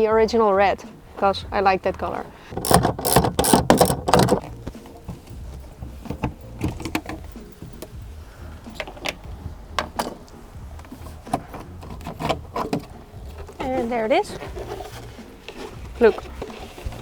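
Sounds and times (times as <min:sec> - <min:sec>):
tool clicks and knocks: 0:02.5 - 0:04.6.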